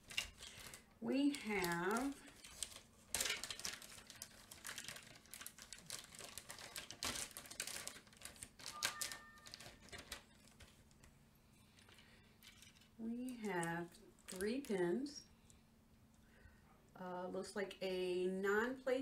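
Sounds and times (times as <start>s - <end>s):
rustling: 0.0s - 14.8s.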